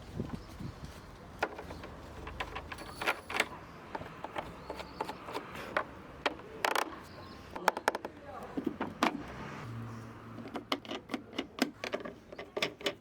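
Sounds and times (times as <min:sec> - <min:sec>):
light clicks and knocks: 0:01.4 - 0:09.3.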